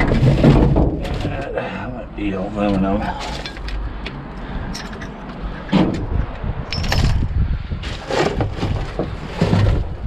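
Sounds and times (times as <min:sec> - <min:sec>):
clattering knocks and rattles: 0:00.0 - 0:01.5, 0:04.7 - 0:10.0
wind rumbling on microphone: 0:03.8 - 0:10.0.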